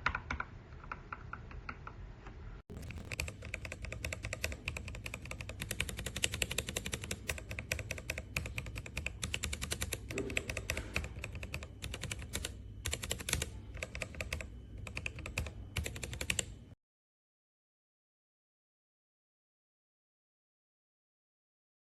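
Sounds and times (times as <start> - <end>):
mechanical keyboard typing: 0.0 - 2.0, 2.7 - 16.6.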